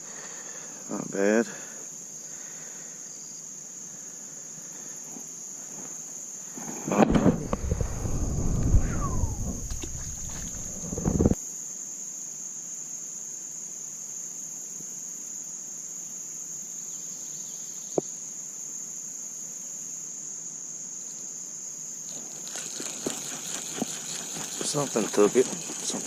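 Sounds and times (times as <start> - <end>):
crickets trilling: 0.0 - 26.0
microphone handling rumble: 6.9 - 11.4.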